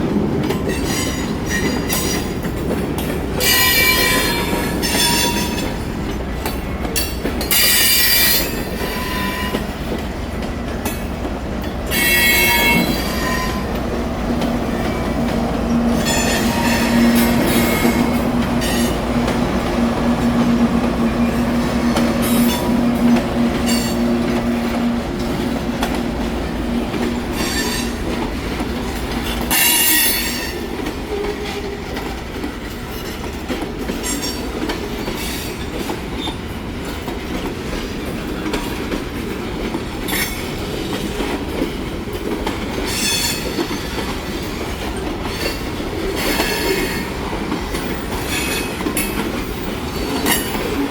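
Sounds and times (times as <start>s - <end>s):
clicking over rail joints: 0.4s - 50.9s
train wheels squealing: 6.6s - 9.8s, 42.9s - 50.8s.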